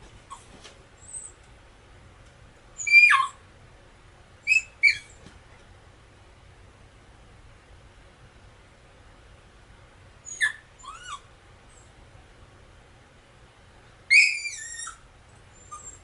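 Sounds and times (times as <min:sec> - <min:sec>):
dog yelping: 0:02.8 - 0:03.4, 0:04.5 - 0:05.2, 0:10.2 - 0:11.3, 0:14.1 - 0:15.0, 0:15.6 - 0:16.0.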